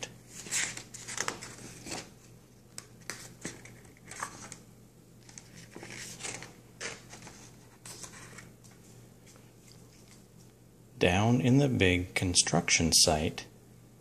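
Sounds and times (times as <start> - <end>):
book pages rustling: 0.3 - 4.6, 5.2 - 10.3.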